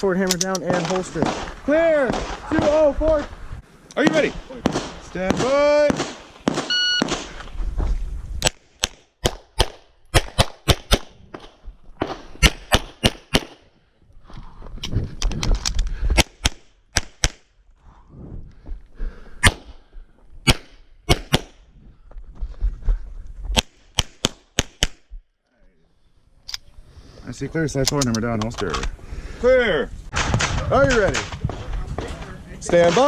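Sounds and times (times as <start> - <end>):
pistol shots: 0.7 - 2.8, 4.0 - 7.4, 8.4 - 13.6, 20.4 - 21.6.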